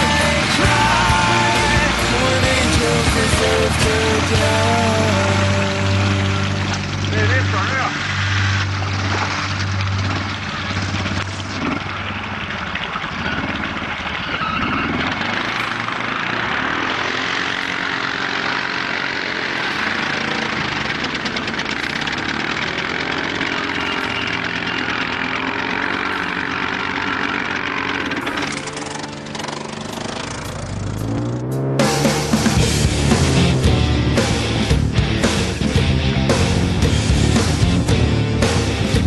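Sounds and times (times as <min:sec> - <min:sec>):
atv engine running: 0:00.0 - 0:39.0.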